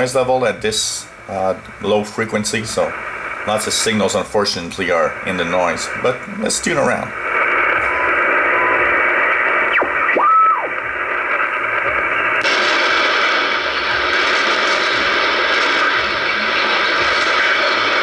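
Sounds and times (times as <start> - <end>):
radio static hiss: 0.0 - 18.0
whistling tones gliding in pitch: 7.8 - 10.8.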